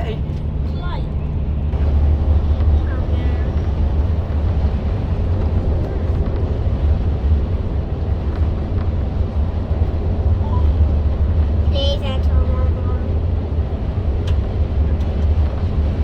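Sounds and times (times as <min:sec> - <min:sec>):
bus engine drone: 0:00.0 - 0:16.0
road noise: 0:00.0 - 0:16.0.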